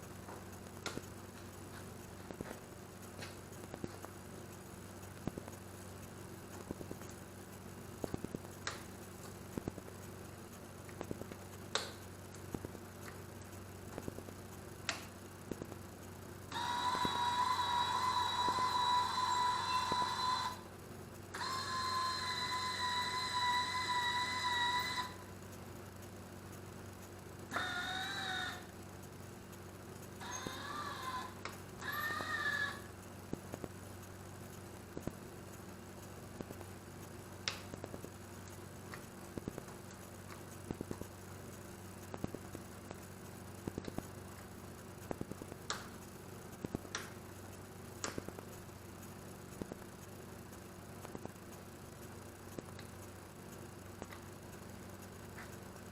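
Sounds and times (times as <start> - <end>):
faint electrical hum: 0.0 - 55.9
electronic buzzer long beeps: 16.5 - 20.7, 21.4 - 25.3, 27.5 - 28.7, 30.2 - 32.9.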